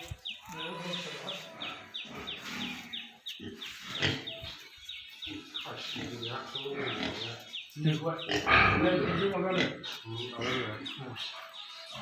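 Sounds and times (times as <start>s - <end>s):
pigs grunting and squealing: 0.0s - 4.6s, 5.2s - 12.0s.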